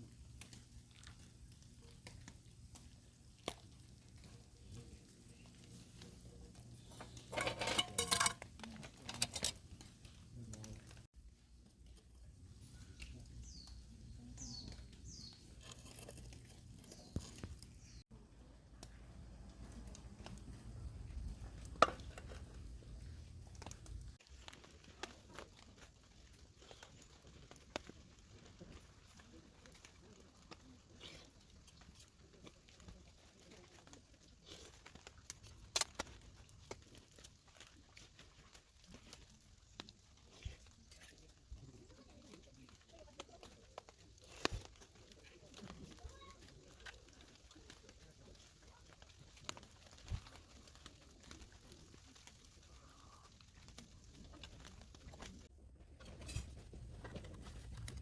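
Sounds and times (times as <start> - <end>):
light rustling: 0.4 - 11.1
small bird chirping: 12.5 - 18.1.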